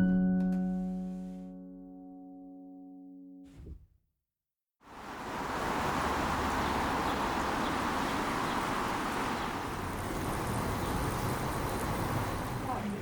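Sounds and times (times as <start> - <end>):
road traffic rumble: 4.9 - 13.0.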